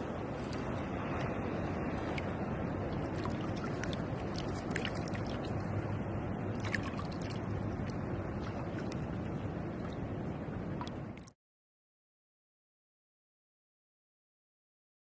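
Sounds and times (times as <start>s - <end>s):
water rushing and gurgling: 0.0s - 11.4s
water drips and clicks: 10.8s - 11.3s.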